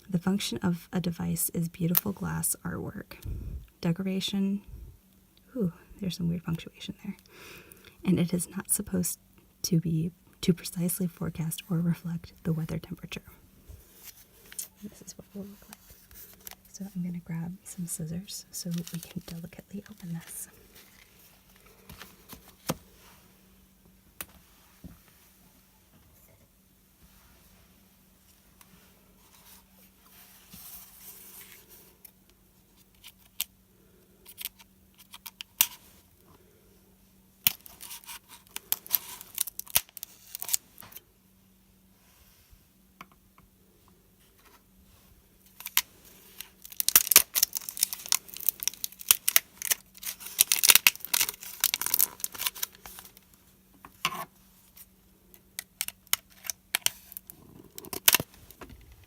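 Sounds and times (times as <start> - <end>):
faint steady hum: 0.0 - 59.0
packaging tearing: 37.4 - 40.6, 46.4 - 53.2.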